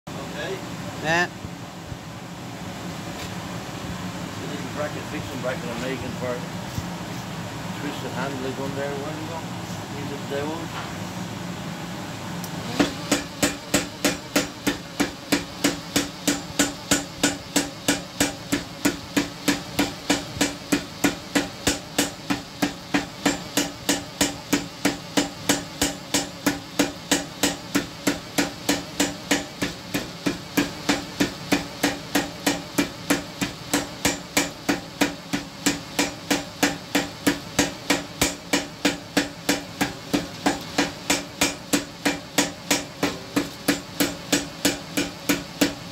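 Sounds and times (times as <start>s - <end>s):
hammer blows on hot iron: 12.7s - 45.9s.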